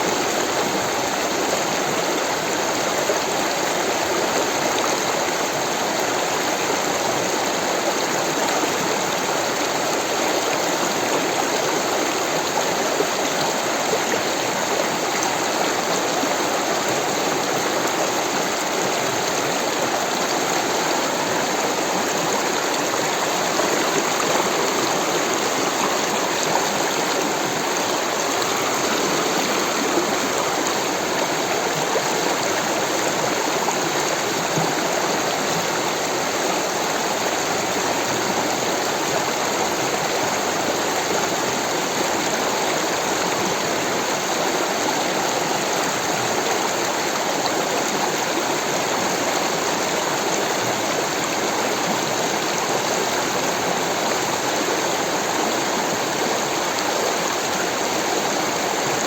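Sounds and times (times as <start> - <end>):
stream water rushing: 0.0 - 59.0.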